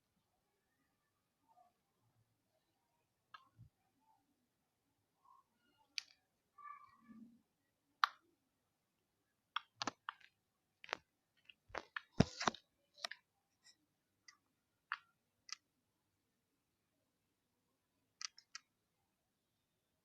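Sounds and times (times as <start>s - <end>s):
sharp clicks and pops: 9.5s - 13.2s, 18.2s - 18.7s.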